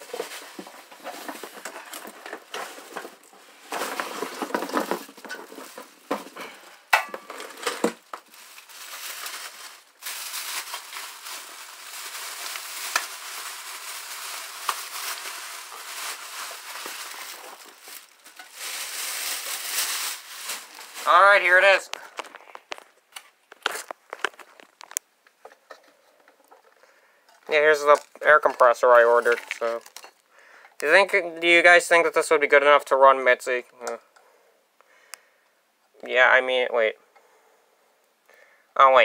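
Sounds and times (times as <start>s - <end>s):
packaging crinkling and rustling: 0.0s - 25.1s, 27.4s - 30.2s.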